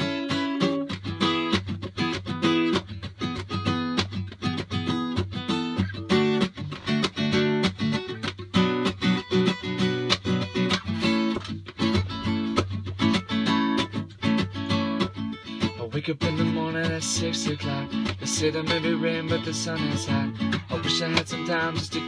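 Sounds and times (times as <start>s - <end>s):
acoustic guitar strumming: 0.0s - 22.0s.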